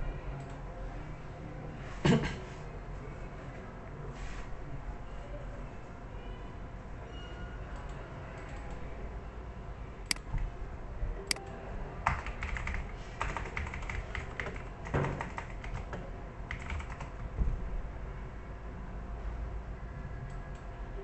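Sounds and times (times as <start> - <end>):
typing on a computer keyboard: 12.0 - 17.3.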